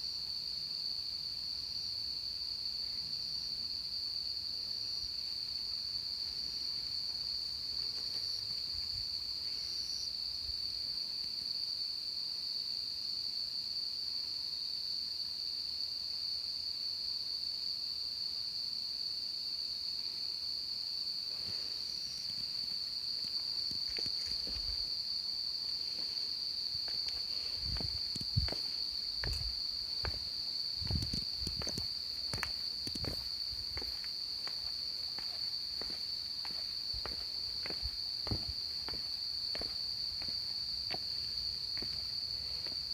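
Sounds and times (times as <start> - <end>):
insects droning chorus: 0.0 - 42.9
footsteps: 23.2 - 24.9, 25.8 - 42.9.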